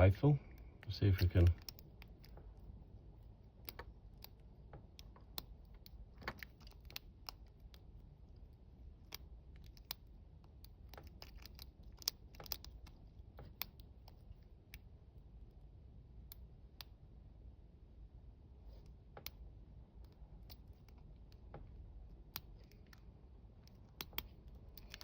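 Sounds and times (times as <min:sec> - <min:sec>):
lock pick clicks and scrapes: 0:05.0 - 0:07.8, 0:09.0 - 0:14.4, 0:23.6 - 0:25.0.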